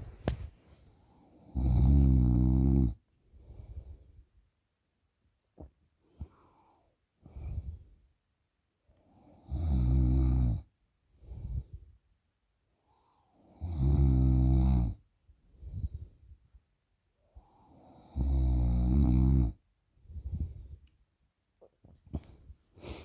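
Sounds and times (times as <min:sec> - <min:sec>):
person snoring: 0:01.5 - 0:03.0
breathy puffs: 0:22.0 - 0:23.0.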